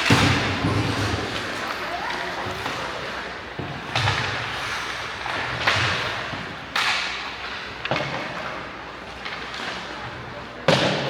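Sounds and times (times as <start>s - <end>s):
arena background noise: 0.0s - 11.0s
hockey sticks cracking on puck: 3.7s - 9.9s.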